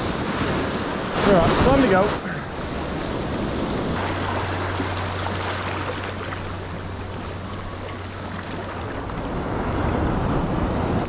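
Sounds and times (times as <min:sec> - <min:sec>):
surf: 0:00.0 - 0:11.0
wind: 0:00.0 - 0:11.0
low hum: 0:02.4 - 0:11.0.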